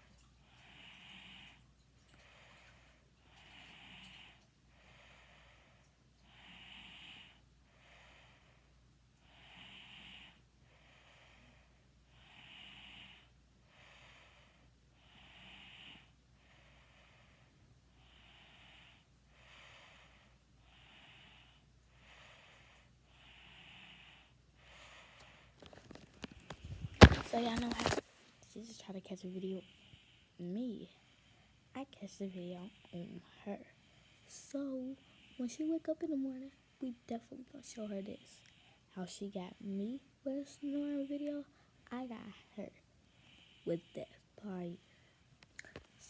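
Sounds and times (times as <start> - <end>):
person snoring faintly: 23.2 - 28.0.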